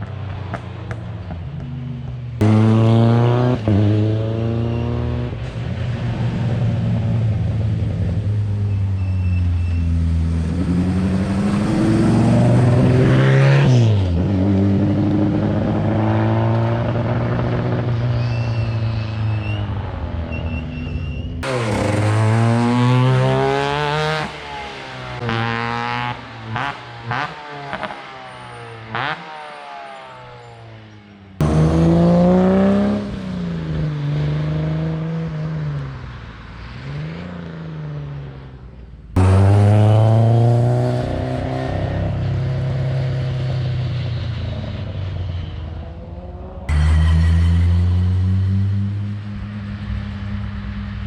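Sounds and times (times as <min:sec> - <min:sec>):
rally car engine accelerating: 0:02.4 - 0:35.6, 0:39.1 - 0:45.0, 0:45.7 - 0:51.0
exhaust bangs: 0:20.8 - 0:33.8.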